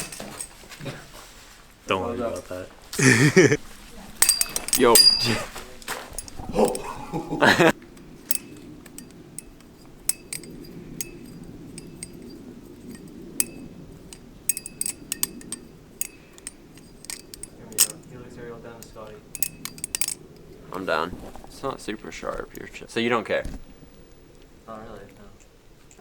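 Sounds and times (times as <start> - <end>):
butterfly knife metallic clicks: 4.2 - 5.3, 7.9 - 18.0, 18.8 - 20.6.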